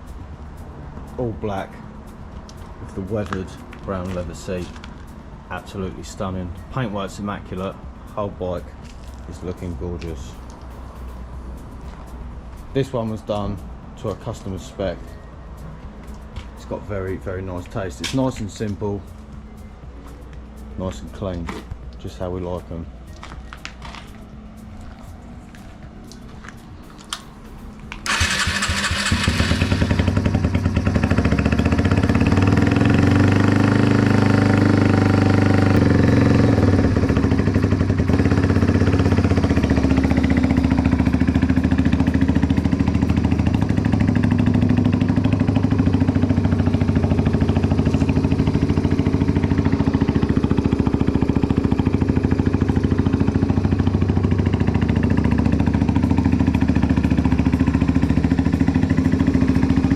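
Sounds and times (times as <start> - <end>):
motorcycle engine revving and idling: 28.0 - 59.9.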